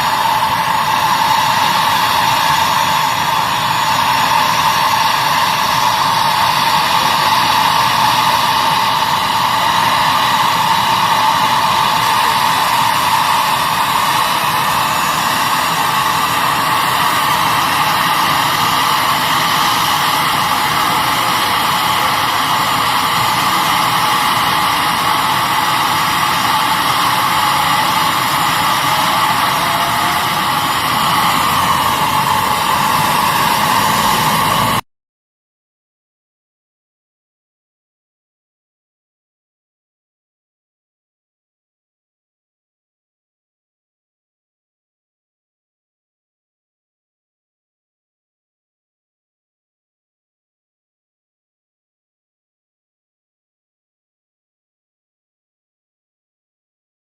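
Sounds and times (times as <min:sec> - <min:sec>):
helicopter engine and rotor drone: 0:00.0 - 0:34.8.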